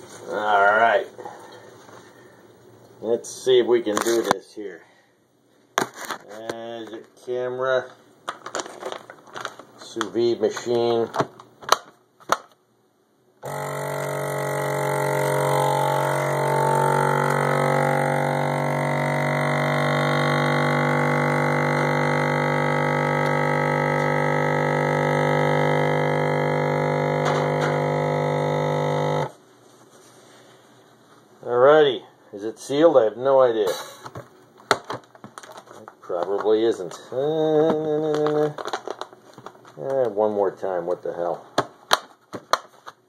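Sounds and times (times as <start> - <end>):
vacuum sealer pump humming: 13.4 - 29.4, 36.9 - 39.9.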